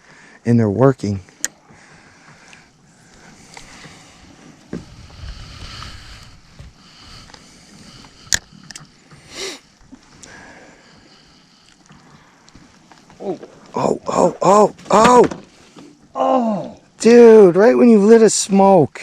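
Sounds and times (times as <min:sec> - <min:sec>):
low knocks and rustling: 0:01.6 - 0:10.2.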